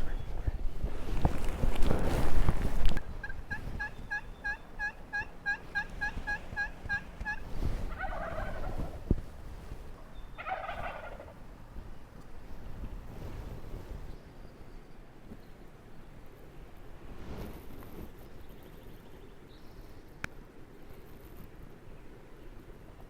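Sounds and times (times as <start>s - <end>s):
turkey call notes: 2.9s - 9.2s, 9.9s - 11.4s
turkey gobbling: 3.0s - 9.1s, 10.0s - 11.4s.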